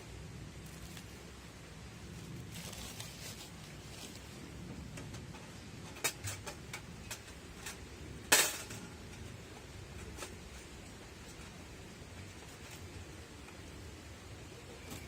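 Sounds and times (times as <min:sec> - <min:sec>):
metal stove parts clinking: 0:05.1 - 0:09.3.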